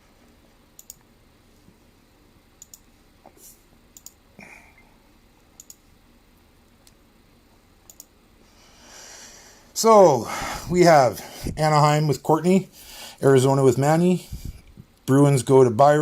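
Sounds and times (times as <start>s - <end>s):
light clicks: 0.8s - 1.1s, 2.6s - 2.9s, 4.0s - 4.2s, 5.6s - 5.8s, 7.9s - 8.1s.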